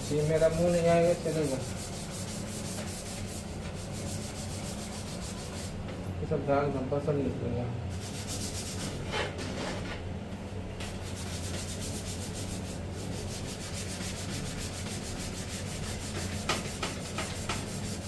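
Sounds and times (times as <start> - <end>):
brush scrubbing: 0.0 - 5.8, 8.0 - 9.0, 10.8 - 18.0
steady low hum: 0.0 - 18.0.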